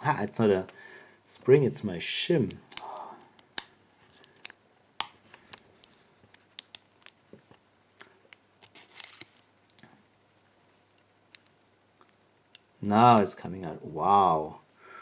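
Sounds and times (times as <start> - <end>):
small metallic clicks: 10.9 - 13.3.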